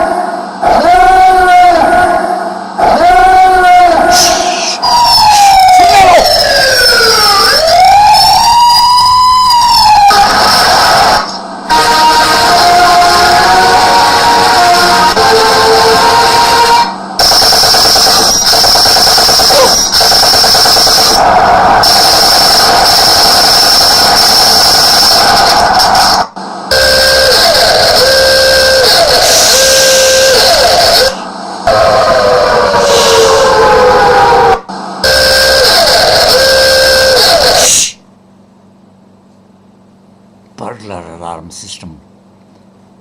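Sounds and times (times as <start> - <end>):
burglar alarm siren wailing: 0.0 - 37.8
fast-rattling machine-like drone: 9.2 - 37.9.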